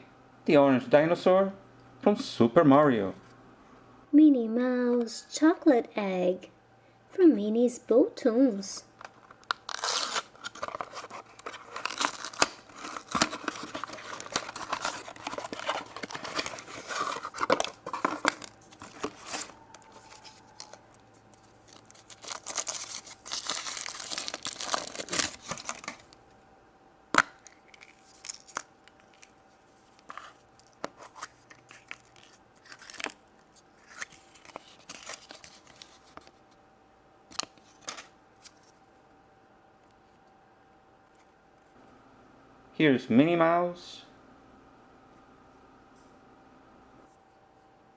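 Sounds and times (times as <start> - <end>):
foil wrapper crinkling: 9.1 - 26.2, 27.2 - 36.3.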